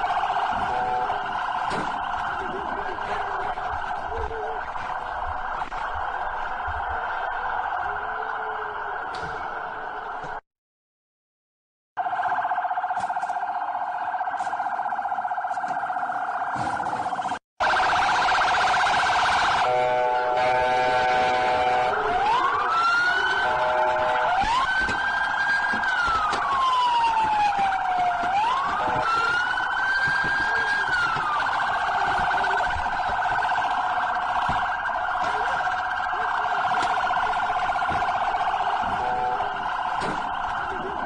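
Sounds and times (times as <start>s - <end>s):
police siren warbling: 0.0s - 10.4s, 12.0s - 41.0s
siren wailing: 0.0s - 10.4s, 12.0s - 41.0s
steady horn-like tone: 19.6s - 22.0s.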